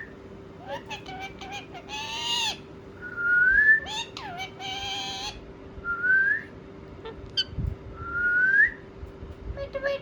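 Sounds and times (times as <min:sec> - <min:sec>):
harsh buzzy parrot calls: 0:00.6 - 0:02.7, 0:03.8 - 0:05.5.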